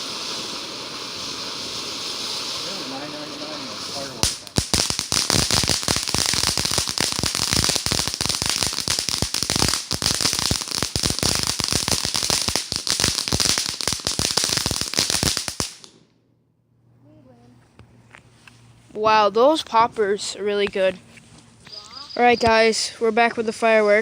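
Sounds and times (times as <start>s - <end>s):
firework crackling pops: 0.0s - 16.1s, 21.6s - 22.8s.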